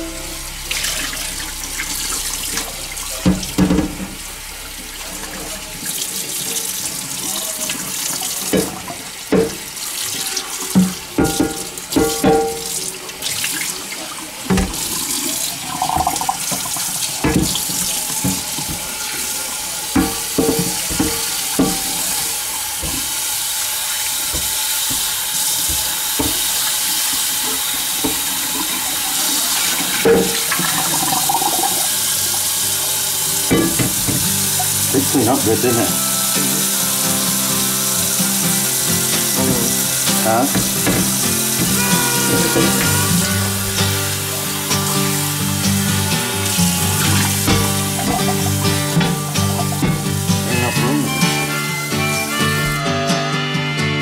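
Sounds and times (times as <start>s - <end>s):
water running from a tap: 0.0s - 51.6s
skillet being scrubbed: 29.4s - 51.6s.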